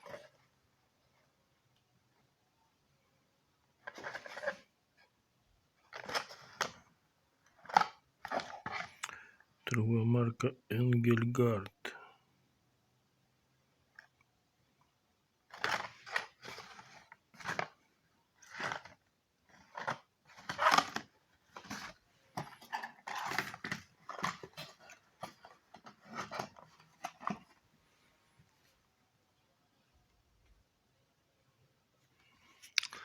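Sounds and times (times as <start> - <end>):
packaging crinkling and rustling: 7.5 - 9.1, 15.5 - 17.8, 18.4 - 27.6.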